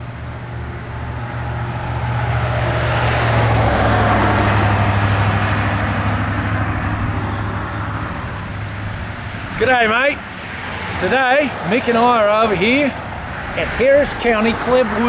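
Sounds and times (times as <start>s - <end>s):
vehicle passing: 0.0s - 15.0s
steady low hum: 5.7s - 10.9s.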